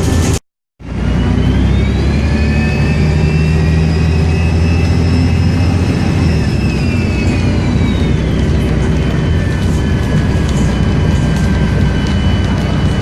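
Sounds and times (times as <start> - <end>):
diesel bus engine accelerating: 0.0 - 13.0
high turbocharger whistle: 0.8 - 13.0.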